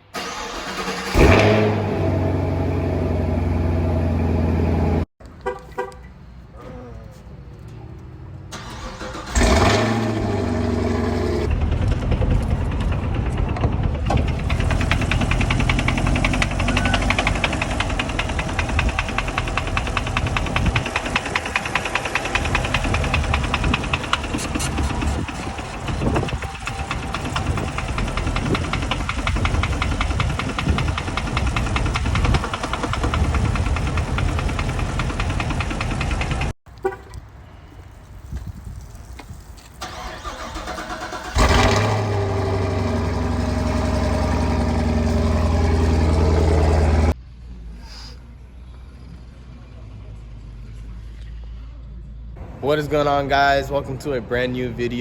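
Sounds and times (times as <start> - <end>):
car engine starting: 0.0 - 5.1, 8.4 - 36.9, 39.8 - 47.2
engine knocking: 11.5 - 36.6.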